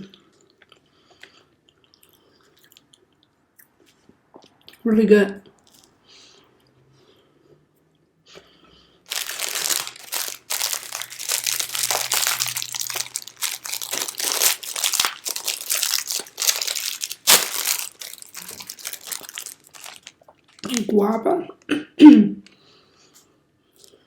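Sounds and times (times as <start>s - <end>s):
plastic wrapper crinkling: 9.1s - 21.0s.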